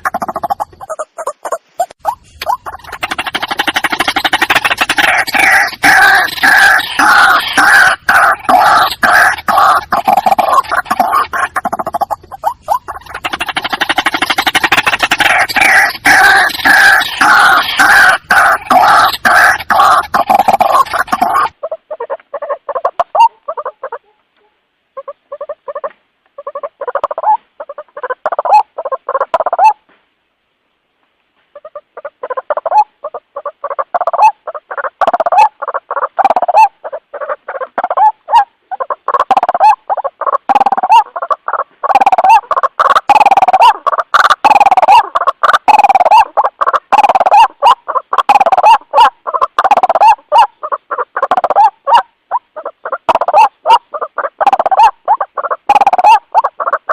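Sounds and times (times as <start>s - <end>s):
waterhen calling: 0.0s - 29.8s, 31.5s - 56.9s.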